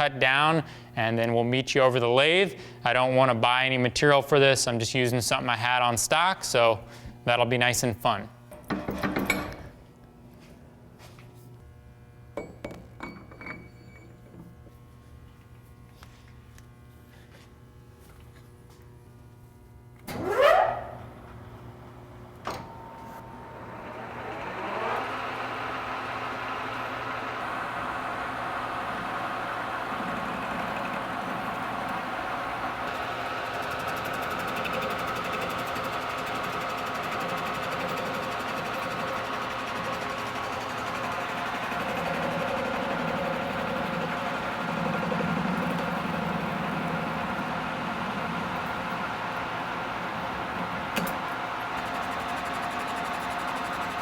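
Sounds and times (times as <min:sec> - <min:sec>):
rising whine: 0:22.5 - 0:32.8
electric saw motor running: 0:23.2 - 0:54.0.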